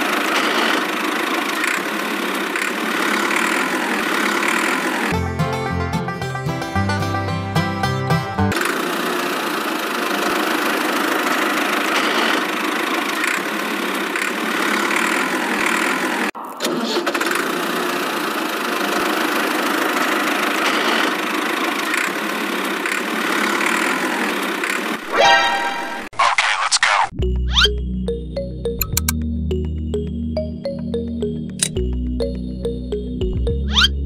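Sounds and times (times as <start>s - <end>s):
engine running: 0.0s - 26.0s.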